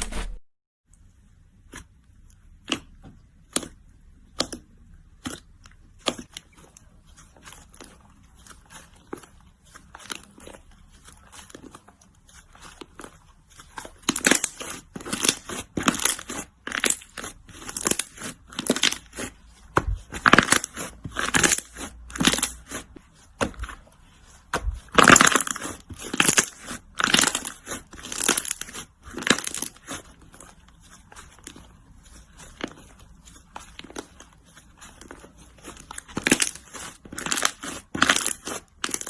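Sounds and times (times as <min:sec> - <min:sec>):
slime squishing by hand: 0:01.0 - 0:39.0.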